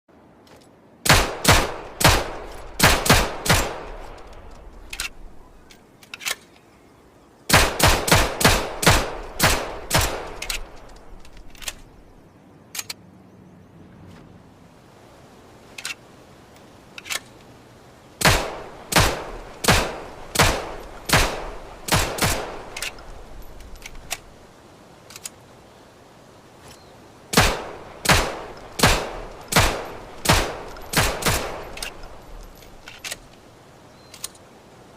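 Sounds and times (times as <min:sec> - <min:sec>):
pistol shots with echo: 0:01.1 - 0:04.0, 0:07.5 - 0:10.8, 0:18.2 - 0:22.9, 0:27.4 - 0:32.1
light mechanical clicks: 0:03.9 - 0:06.8, 0:10.0 - 0:13.0, 0:15.7 - 0:17.5, 0:20.3 - 0:24.4, 0:25.0 - 0:25.4, 0:28.5 - 0:34.5.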